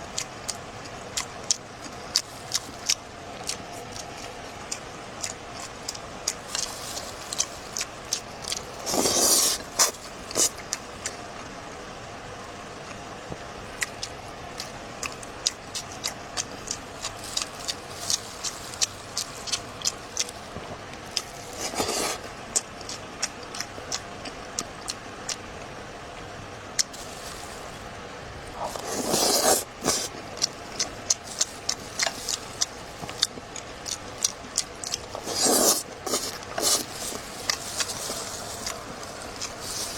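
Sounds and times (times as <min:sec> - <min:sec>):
wet chewing clicks and smacks: 0:00.1 - 0:06.7, 0:22.5 - 0:25.4, 0:30.4 - 0:35.2
slurp: 0:28.6 - 0:30.1, 0:35.1 - 0:37.0.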